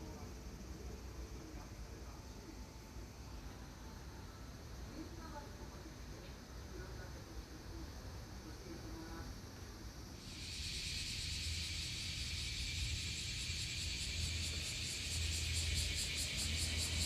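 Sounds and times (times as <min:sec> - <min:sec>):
low steady hum: 0:00.0 - 0:10.2
shrill pulsing insect chorus: 0:00.0 - 0:17.0.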